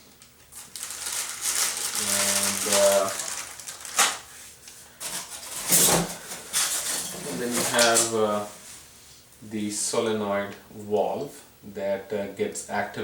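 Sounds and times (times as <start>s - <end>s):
plastic wrapping crinkling: 0.4s - 8.2s.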